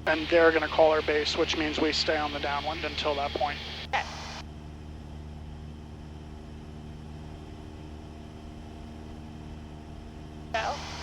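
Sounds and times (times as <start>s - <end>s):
propeller plane engine droning: 0.0s - 11.0s.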